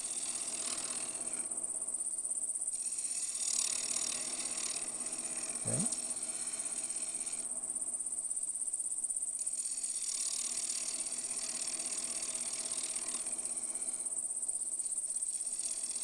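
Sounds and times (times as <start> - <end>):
wood lathe cutting: 2.8 - 5.5, 9.6 - 13.8, 15.5 - 16.0.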